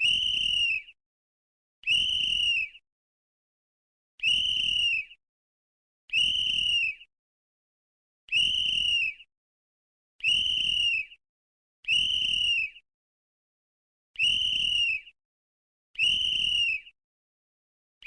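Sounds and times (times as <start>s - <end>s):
whistle blasts: 0.0s - 0.9s, 1.8s - 2.8s, 4.2s - 5.2s, 6.1s - 7.1s, 8.3s - 9.2s, 10.3s - 11.1s, 11.9s - 12.7s, 14.2s - 15.1s, 16.0s - 16.8s.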